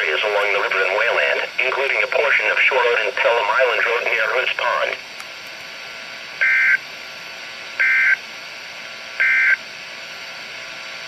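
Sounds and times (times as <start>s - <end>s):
radio static: 0.0s - 5.1s.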